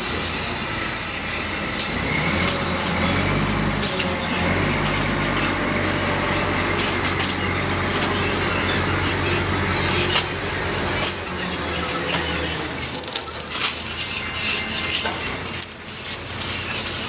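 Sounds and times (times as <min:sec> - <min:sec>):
heavy diesel engine running: 0:00.0 - 0:17.0.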